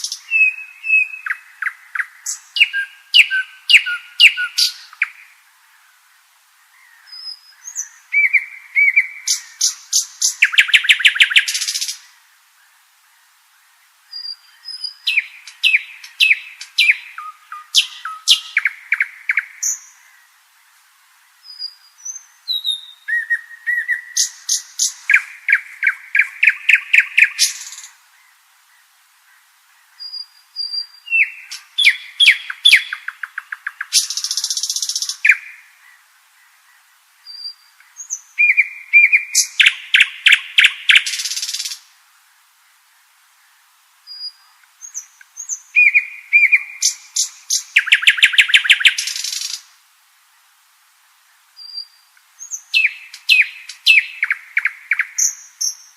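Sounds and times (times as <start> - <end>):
nightingale singing: 0.0 - 42.0, 43.4 - 49.8, 51.1 - 55.9.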